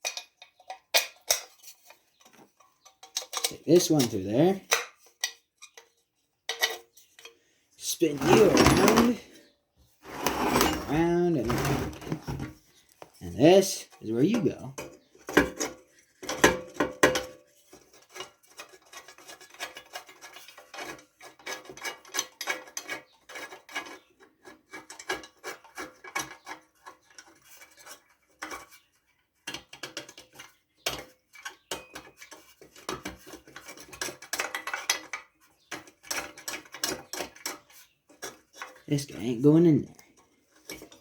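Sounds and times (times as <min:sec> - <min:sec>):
metal parts clinking and scraping: 0:00.0 - 0:05.9, 0:06.5 - 0:09.4, 0:10.0 - 0:16.6, 0:29.8 - 0:39.4.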